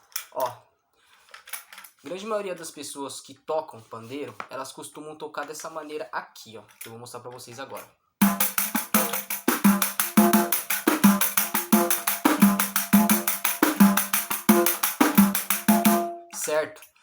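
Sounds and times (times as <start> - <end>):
tambourine jingles: 8.2 - 16.1.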